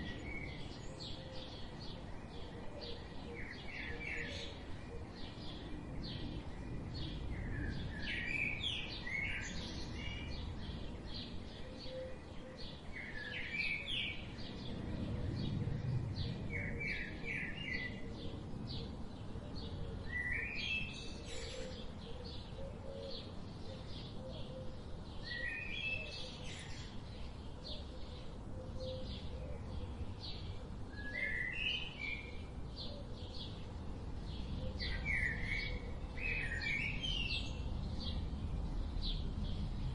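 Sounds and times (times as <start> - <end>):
low outdoor rumble: 14.1 - 20.1.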